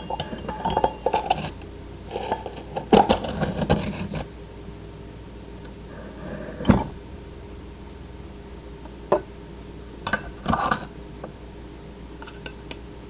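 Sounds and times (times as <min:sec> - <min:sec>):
kitchen utensils clinking: 0:00.0 - 0:04.0.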